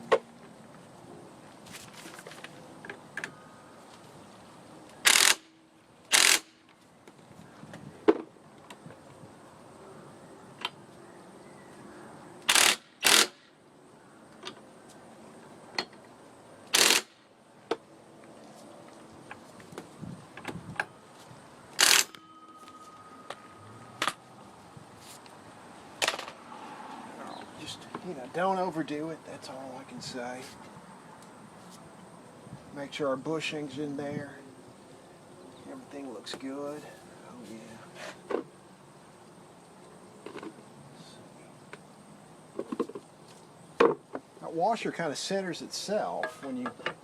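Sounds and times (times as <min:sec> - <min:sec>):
power tool bursts: 0:05.0 - 0:06.6, 0:12.5 - 0:13.5, 0:16.7 - 0:17.2, 0:21.8 - 0:22.3.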